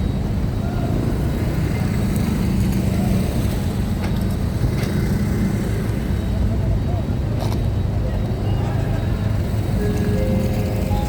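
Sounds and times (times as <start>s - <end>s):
diesel engines rumbling: 0.0s - 11.0s.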